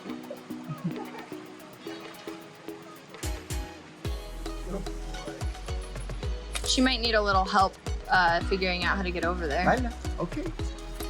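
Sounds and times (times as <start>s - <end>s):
plucked notes: 0.0s - 11.0s
kick drum hits: 3.2s - 4.4s, 5.4s - 10.8s.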